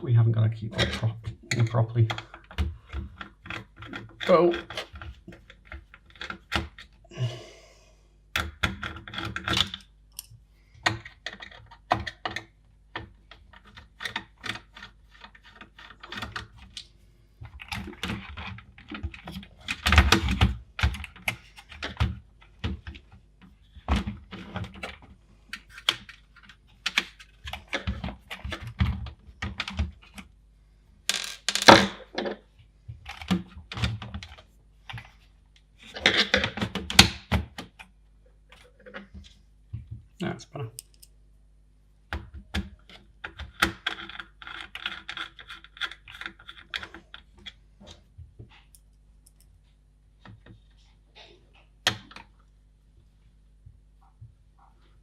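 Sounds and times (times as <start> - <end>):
plastic computer parts clicking: 42.1 - 47.6.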